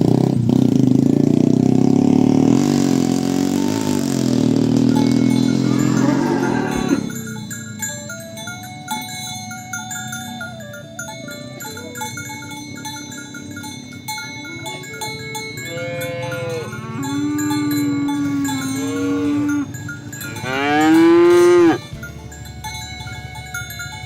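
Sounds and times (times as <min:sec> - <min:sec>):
cattle mooing: 0:02.0 - 0:07.3, 0:14.4 - 0:22.2
light music with mallet notes: 0:04.1 - 0:24.0.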